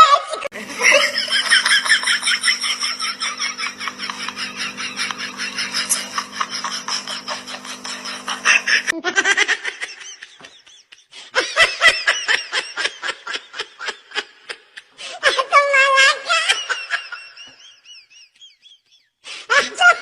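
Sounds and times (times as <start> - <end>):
people laughing: 0.0 - 15.4.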